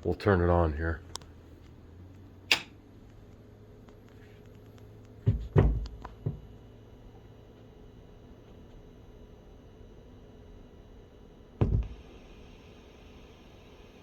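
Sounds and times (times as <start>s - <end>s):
faint electrical hum: 0.0s - 14.0s
machine switch click: 2.5s - 2.8s
low speaker thump: 5.2s - 6.5s, 11.6s - 11.9s
speaker pops: 11.6s - 12.0s.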